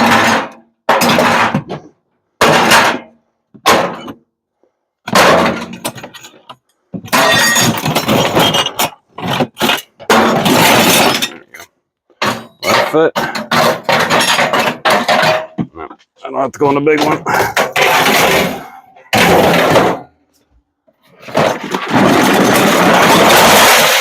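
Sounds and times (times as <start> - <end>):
scrap parts crashing and clattering: 0.0 - 4.2, 5.0 - 15.7, 16.6 - 20.2, 21.0 - 24.0.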